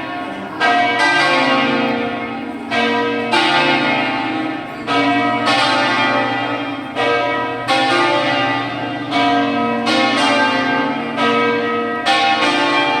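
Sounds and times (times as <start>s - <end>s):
church bells tolling: 0.0s - 13.0s.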